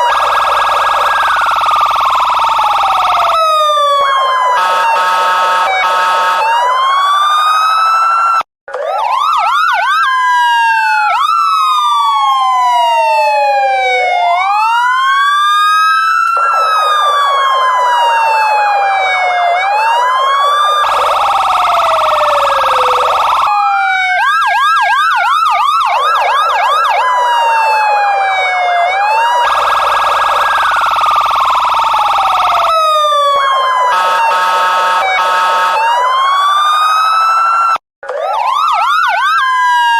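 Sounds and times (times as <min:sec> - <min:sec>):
police car sirens: 0:00.0 - 0:39.9.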